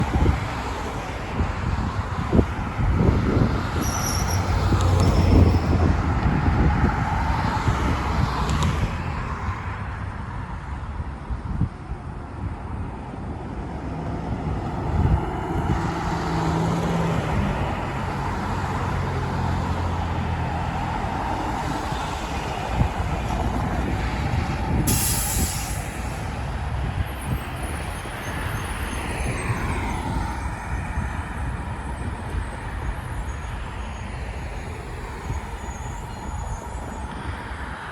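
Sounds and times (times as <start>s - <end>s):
road traffic: 0.0s - 37.9s
bus diesel engine passing: 13.0s - 37.9s
loud hiss of air: 24.8s - 27.1s.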